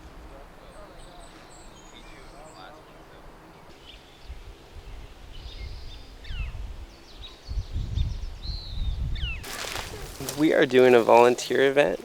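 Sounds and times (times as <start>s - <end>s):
birds chirping: 0.6s - 12.0s.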